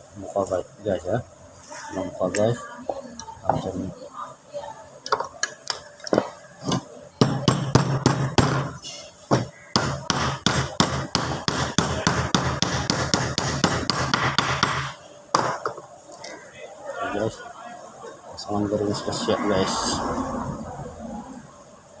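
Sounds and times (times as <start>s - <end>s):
rapid hammer taps: 9.8s - 15.6s.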